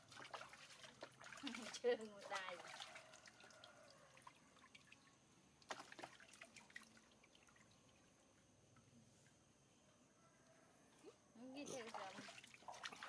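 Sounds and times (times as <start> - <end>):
water dripping: 0.0 - 9.4.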